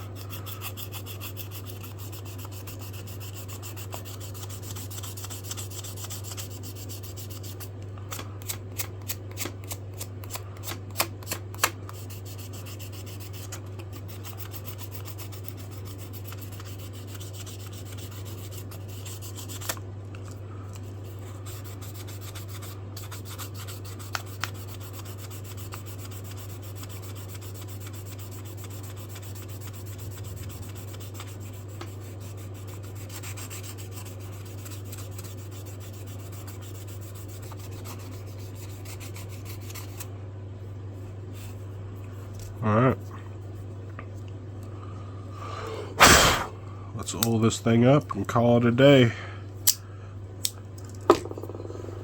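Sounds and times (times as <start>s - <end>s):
sandpaper rubbing on wood: 0.0s - 7.7s, 12.0s - 19.6s, 21.4s - 39.7s.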